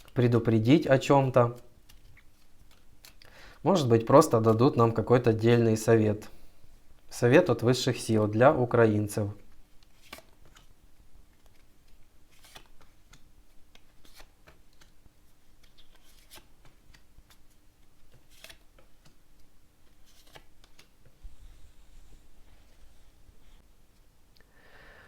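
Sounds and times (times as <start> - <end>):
cards shuffling: 1.2 - 3.3, 9.8 - 10.7, 11.3 - 21.1.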